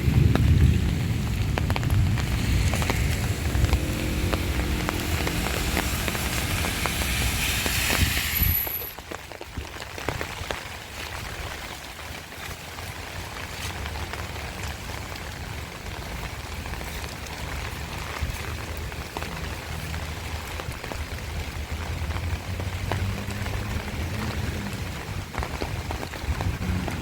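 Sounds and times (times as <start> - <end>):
heavy rain falling: 0.0 - 27.0
low steady hum: 0.1 - 8.8.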